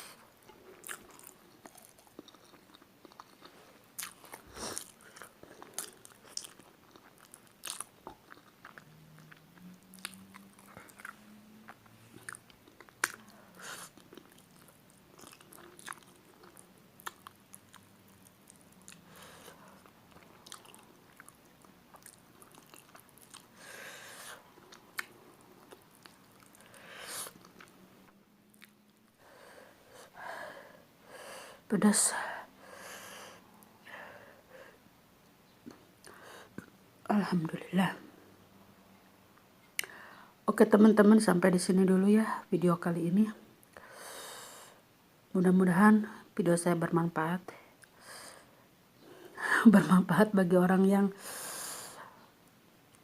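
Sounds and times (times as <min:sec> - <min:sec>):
wet mouth clicks and crunches: 0:00.5 - 0:19.0
chewing and biting: 0:00.5 - 0:23.6, 0:28.6 - 0:28.8.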